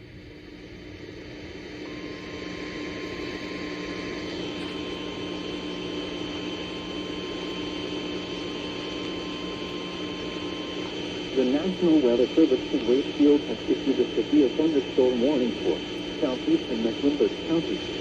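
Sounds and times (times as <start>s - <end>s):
receiver hiss and hum: 0.0s - 18.0s
steady alarm tone: 1.8s - 18.0s.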